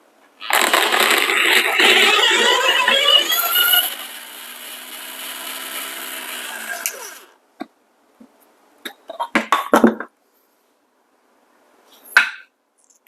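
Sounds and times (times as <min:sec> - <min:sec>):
coffee grinder motor whine: 0:00.6 - 0:07.4.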